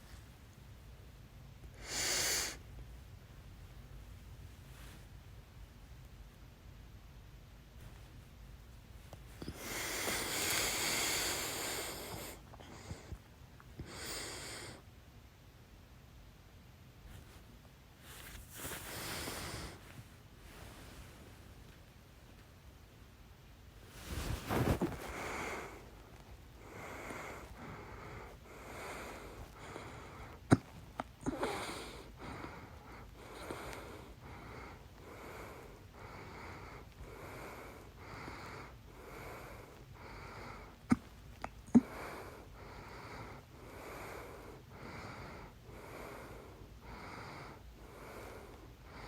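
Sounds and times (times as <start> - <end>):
person breathing close to microphone: 9.3 - 14.9, 18.0 - 21.5, 23.8 - 41.1, 41.7 - 49.0.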